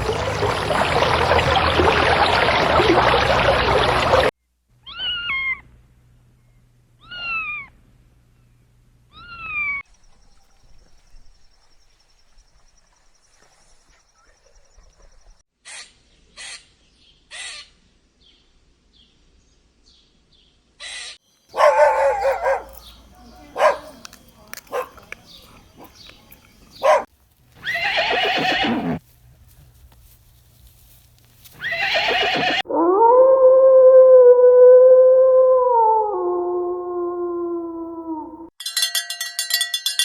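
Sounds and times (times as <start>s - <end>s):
animal calling: 0.0s - 5.6s, 7.0s - 7.7s, 20.8s - 29.0s, 31.6s - 32.6s.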